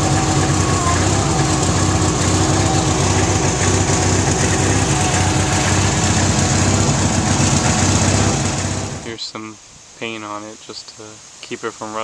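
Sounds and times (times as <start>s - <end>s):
backhoe engine idling: 0.0s - 9.1s.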